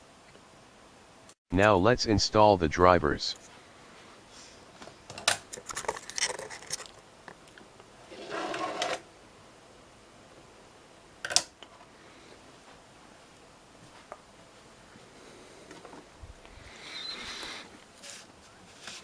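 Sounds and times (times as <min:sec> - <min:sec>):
small hard objects clicking and rattling: 0:05.1 - 0:07.6.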